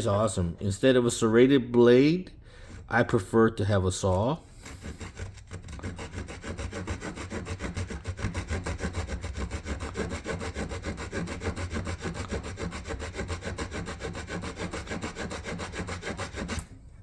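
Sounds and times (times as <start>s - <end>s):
small saw cutting wood: 4.1s - 16.8s.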